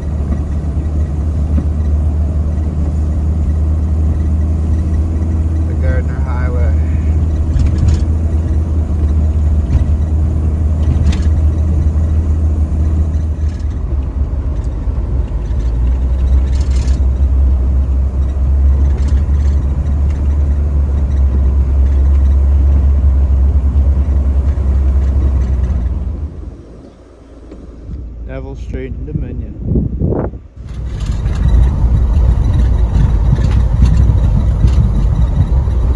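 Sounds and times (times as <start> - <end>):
short knocks: 0.0 - 26.0
motor vehicle low rumble: 0.0 - 35.9.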